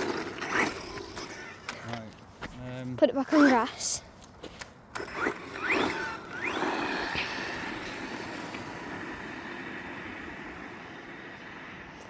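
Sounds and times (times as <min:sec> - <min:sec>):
rc car electric motor whining: 0:00.0 - 0:01.8, 0:04.9 - 0:12.0.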